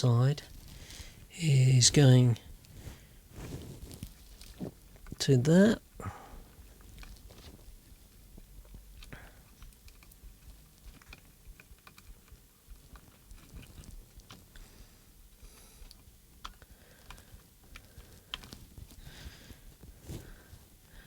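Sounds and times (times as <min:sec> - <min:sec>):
small plastic parts clicking: 0:08.7 - 0:14.6, 0:15.6 - 0:19.0.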